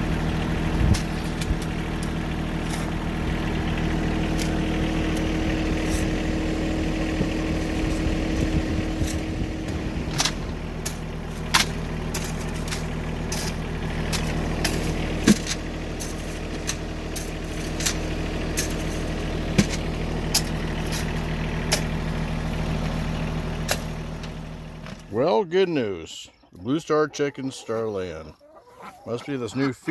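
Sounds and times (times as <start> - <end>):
vehicle engine running: 0.0 - 29.9
sharp clicks and knocks: 9.0 - 18.0, 19.6 - 21.9.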